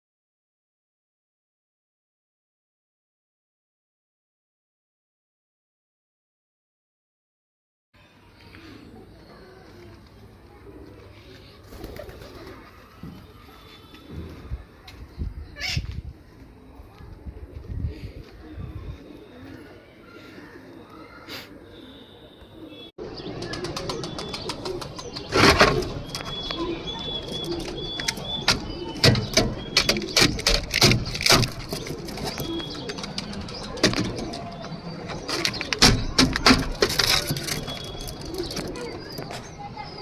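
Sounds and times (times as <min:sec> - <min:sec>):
pigeons cooing: 0:08.6 - 0:14.5, 0:15.5 - 0:39.4
sharp clatters and knocks: 0:27.6 - 0:39.4.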